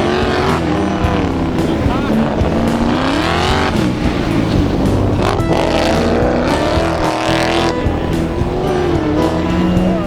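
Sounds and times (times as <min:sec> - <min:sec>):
race car engines revving: 0:00.0 - 0:10.0.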